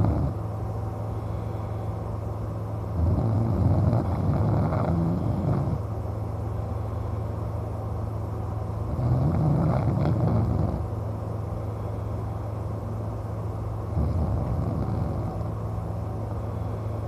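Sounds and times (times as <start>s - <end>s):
man snoring: 0.0s - 0.4s, 3.0s - 5.8s, 8.9s - 10.9s, 13.9s - 15.5s
steady low hum: 0.0s - 17.0s.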